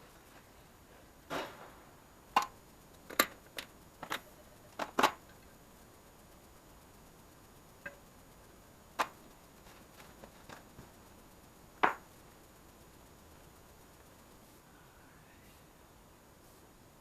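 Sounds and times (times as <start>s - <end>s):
sharp knocks and clicks: 11.8s - 12.0s.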